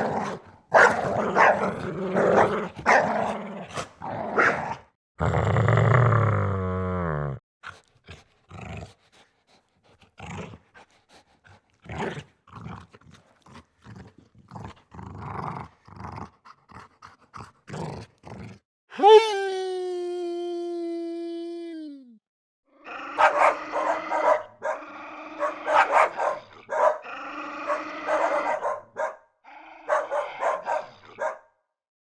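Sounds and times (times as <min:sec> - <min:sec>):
dog growling: 0:00.0 - 0:09.3, 0:11.8 - 0:18.6, 0:22.7 - 0:31.3.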